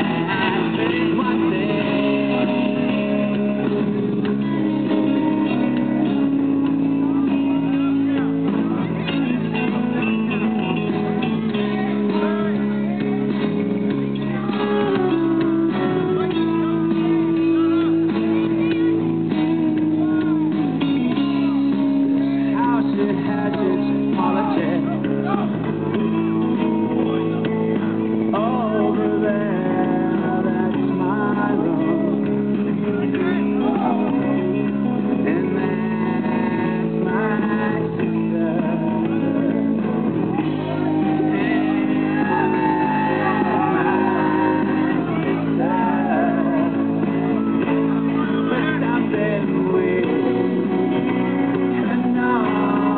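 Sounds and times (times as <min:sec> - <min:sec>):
guitar music: 0:00.0 - 0:52.9.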